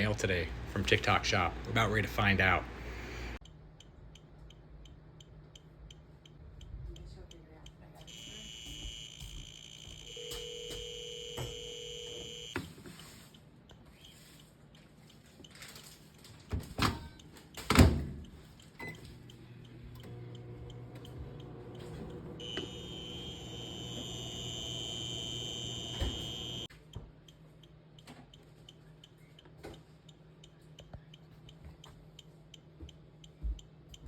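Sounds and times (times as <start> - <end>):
high electronic tone: 8.1 - 12.5, 22.4 - 26.7
microwave oven humming: 8.1 - 12.6, 18.8 - 26.7.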